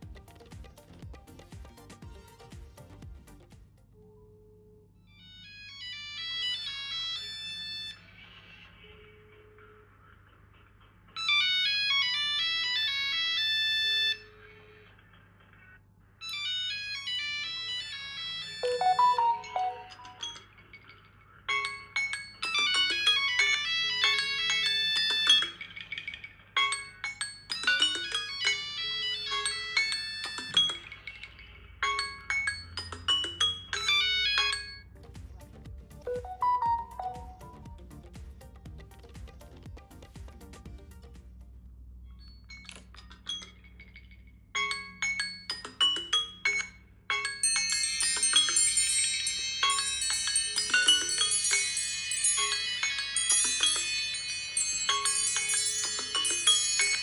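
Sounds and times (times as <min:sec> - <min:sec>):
phone ringtone bell-like melody: 0:16.5 - 0:20.6, 0:21.5 - 0:25.7, 0:26.6 - 0:31.2, 0:31.8 - 0:35.0, 0:36.1 - 0:37.8, 0:44.6 - 0:57.0
shimmering chime tone: 0:18.6 - 0:20.5, 0:36.1 - 0:37.8, 0:47.4 - 0:57.0.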